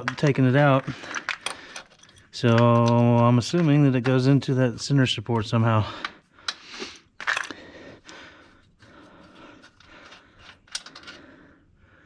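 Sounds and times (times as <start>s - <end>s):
scraping and rustling of tools: 0.0s - 4.3s, 6.0s - 7.7s, 8.6s - 11.4s.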